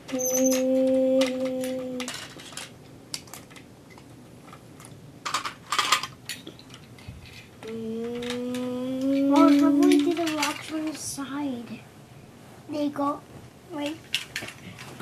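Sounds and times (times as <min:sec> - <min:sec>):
toy pieces clicking and clattering: 0:00.1 - 0:04.0, 0:04.8 - 0:11.1.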